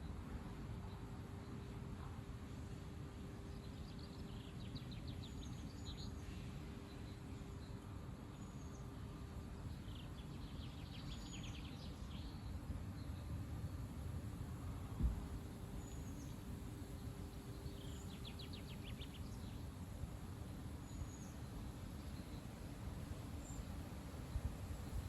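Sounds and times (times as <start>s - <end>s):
wind rumbling on microphone: 14.6s - 16.5s.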